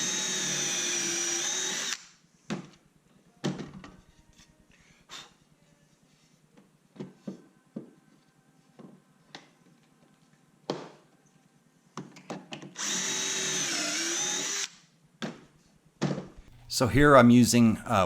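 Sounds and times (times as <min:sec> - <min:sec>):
power drill boring into wood: 0:00.0 - 0:02.1, 0:12.8 - 0:14.8.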